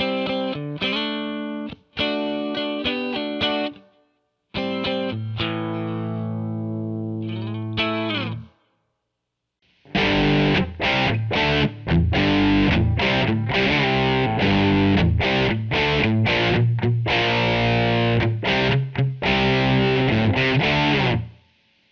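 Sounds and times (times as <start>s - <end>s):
distorted guitar riff: 0.0s - 3.9s, 4.6s - 8.5s, 9.7s - 21.6s
electric guitar chord sliding down: 9.9s - 21.3s.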